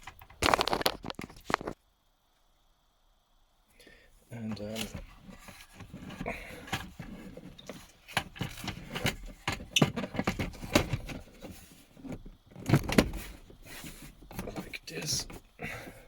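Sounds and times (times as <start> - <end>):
car parts clicking and knocking: 4.5 - 13.6.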